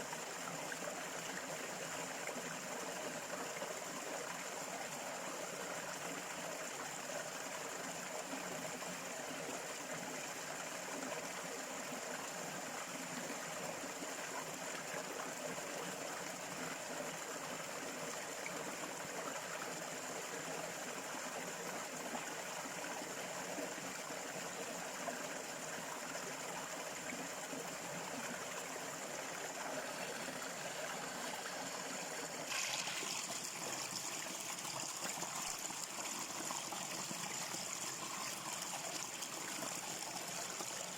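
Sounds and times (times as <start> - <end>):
stream trickling over stones: 0.0 - 40.9
water splash: 32.5 - 33.2.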